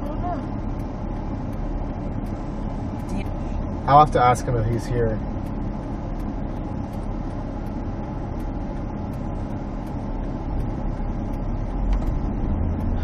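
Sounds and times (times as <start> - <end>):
car road and engine rumble: 0.0 - 13.0.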